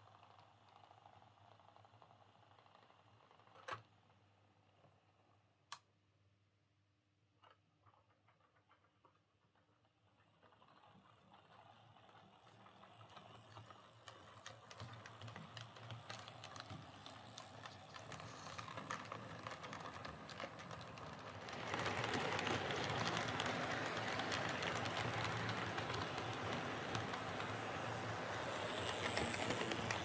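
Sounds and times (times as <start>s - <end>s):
wheels clicking over rail joints: 7.9s - 30.0s
model train motor whirring: 10.5s - 30.0s.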